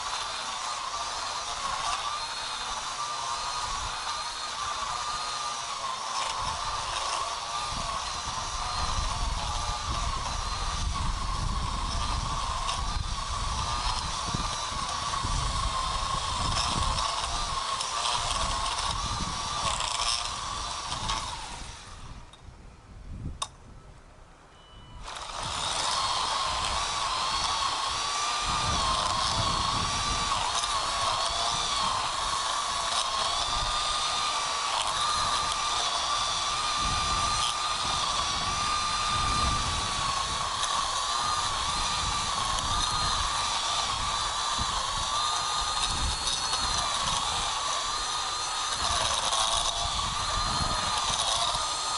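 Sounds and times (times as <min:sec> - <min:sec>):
string trimmer motor whine: 0:00.0 - 0:22.4, 0:24.9 - 0:51.9.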